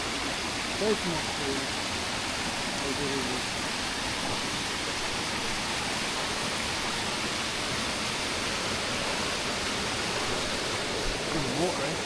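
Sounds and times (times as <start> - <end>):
river water rushing: 0.0 - 12.0.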